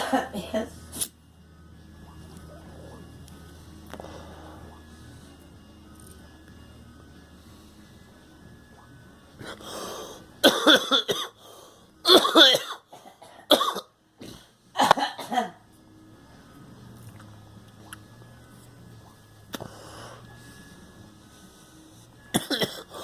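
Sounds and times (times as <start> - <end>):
person coughing: 0.0 - 0.7, 10.4 - 11.4, 12.0 - 15.6, 22.3 - 23.0.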